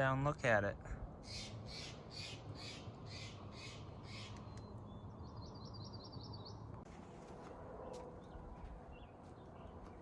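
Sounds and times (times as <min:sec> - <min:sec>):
bird harsh raspy calls: 0:01.2 - 0:04.6
bird trill of high chirps: 0:01.2 - 0:06.7.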